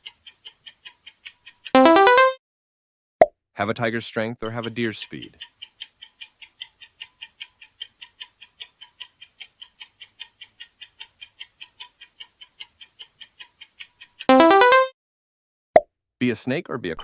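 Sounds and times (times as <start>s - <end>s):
clock ticking quickly: 0.0s - 2.3s, 4.4s - 14.9s.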